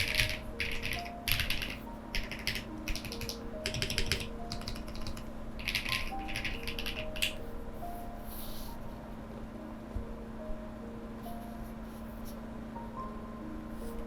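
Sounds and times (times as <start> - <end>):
mechanical keyboard typing: 0.0 - 7.4
soft background music: 0.0 - 14.0.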